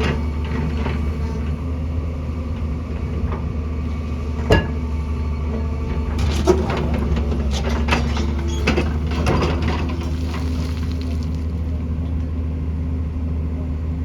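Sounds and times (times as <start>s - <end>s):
excavator diesel engine running: 0.0s - 14.0s
machine knocks clanks and squeals: 5.9s - 10.3s.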